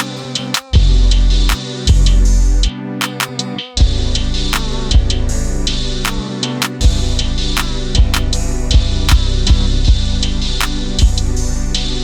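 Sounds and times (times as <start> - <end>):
music with heavy bass: 0.0 - 12.0
regular drum beat: 6.1 - 11.2.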